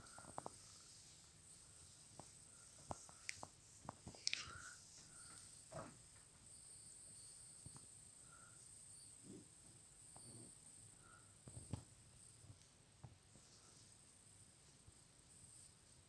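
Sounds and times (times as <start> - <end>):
soft clicks and rustles: 0.0 - 6.6, 11.4 - 15.8
faint high hiss: 0.0 - 16.0.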